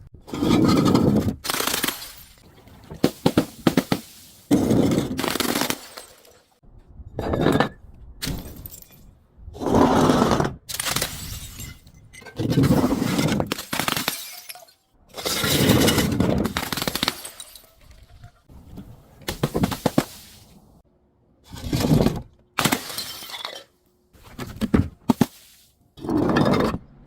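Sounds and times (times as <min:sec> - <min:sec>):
glass breaking and crunching: 0:01.3 - 0:06.6, 0:10.7 - 0:18.2, 0:22.6 - 0:23.7.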